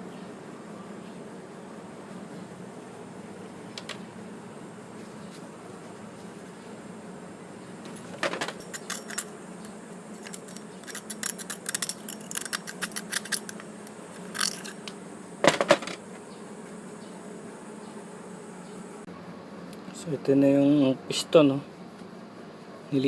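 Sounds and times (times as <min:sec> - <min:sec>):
small metal parts clinking: 0:08.3 - 0:09.3, 0:10.2 - 0:14.9.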